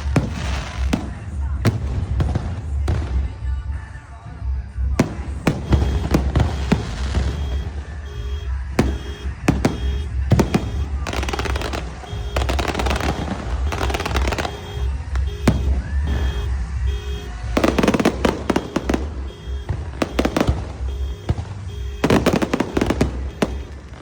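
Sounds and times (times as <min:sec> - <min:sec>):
fireworks bangs: 0:00.0 - 0:04.0, 0:04.8 - 0:24.0
fireworks crackling: 0:00.0 - 0:24.0.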